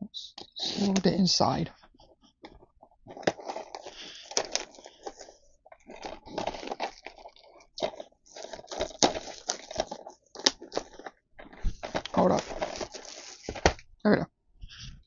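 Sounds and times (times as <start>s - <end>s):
packaging crinkling and rustling: 2.0s - 13.8s
packaging snapping: 2.4s - 13.8s.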